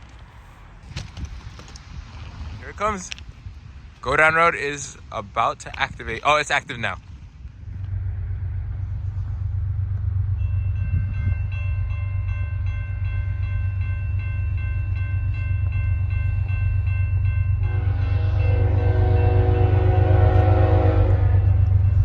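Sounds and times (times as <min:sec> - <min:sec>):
low rumble: 0:05.7 - 0:22.0
crossing warning bell ringing: 0:08.0 - 0:22.0.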